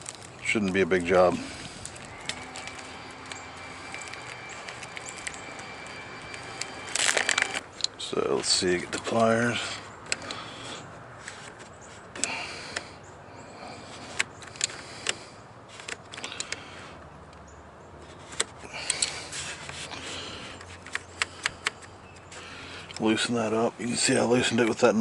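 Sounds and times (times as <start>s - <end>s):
handling noise: 0.0s - 12.9s.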